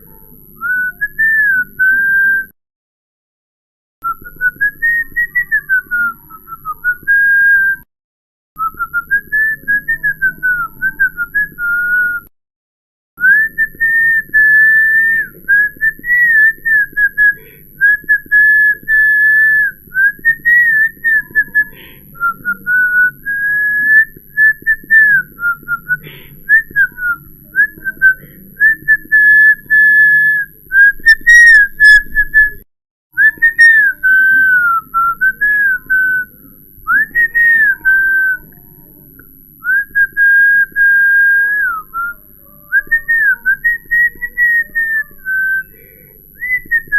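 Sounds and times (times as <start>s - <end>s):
person whistling a tune: 0.6s - 2.6s, 4.0s - 7.9s, 8.6s - 12.3s, 13.2s - 32.6s, 33.2s - 36.3s, 36.9s - 38.5s, 39.6s - 46.9s.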